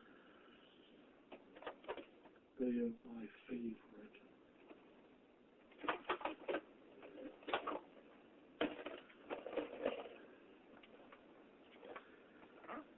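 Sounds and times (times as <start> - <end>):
irregular clicks and knocks: 5.7 - 8.0.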